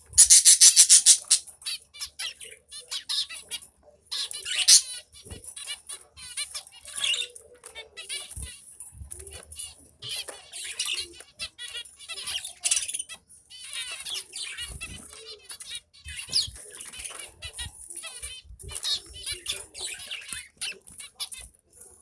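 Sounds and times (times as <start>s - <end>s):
finches chirping: 0.0s - 1.5s, 4.2s - 5.0s, 12.2s - 13.1s
wing flutters: 0.1s - 1.4s.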